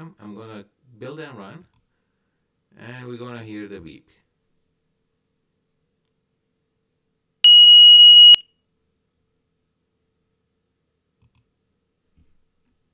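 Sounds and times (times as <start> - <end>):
high-pitched electronic beep: 7.5 - 8.4
click: 11.2 - 11.5.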